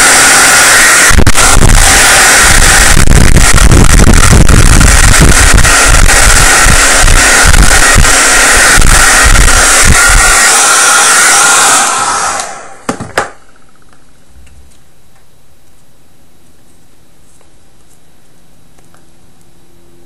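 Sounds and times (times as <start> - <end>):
hot-air blower running: 0.0 - 14.0.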